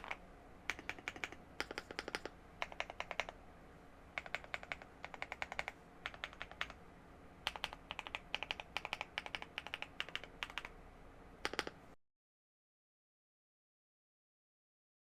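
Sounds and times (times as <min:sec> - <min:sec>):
mechanical keyboard typing: 0:00.0 - 0:03.4, 0:04.2 - 0:06.8, 0:07.4 - 0:10.8, 0:11.4 - 0:11.8.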